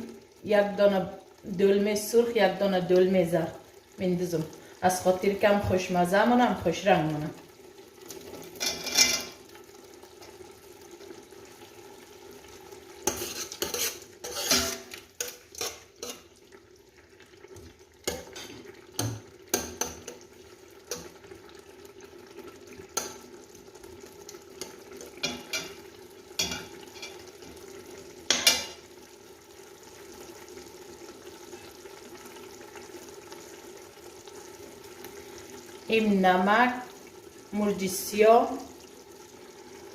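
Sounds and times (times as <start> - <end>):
vegetables frying in oil: 0.0 - 39.9
spoon scraping and knocking pan: 8.6 - 9.4, 13.0 - 16.3, 24.6 - 25.8, 26.4 - 27.2, 28.3 - 28.8.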